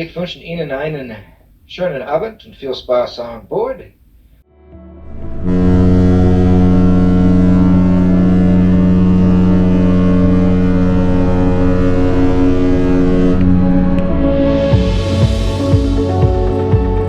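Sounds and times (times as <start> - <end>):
ship horn deep blast: 5.0 - 16.8.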